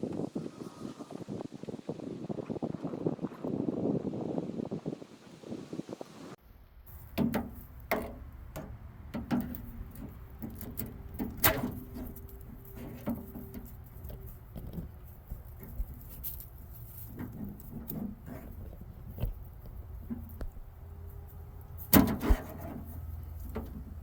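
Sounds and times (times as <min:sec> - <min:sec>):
hand tools clicking and tapping: 0:07.0 - 0:16.5.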